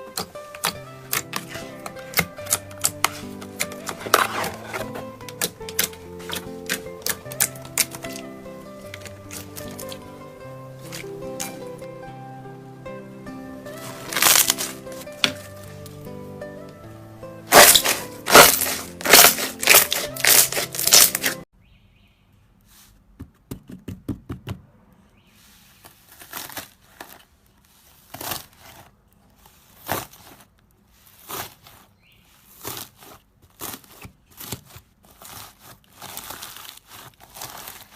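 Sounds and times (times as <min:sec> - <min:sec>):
slime crackling and popping: 0:00.0 - 0:10.1, 0:13.9 - 0:15.2, 0:17.5 - 0:21.4, 0:32.5 - 0:37.9.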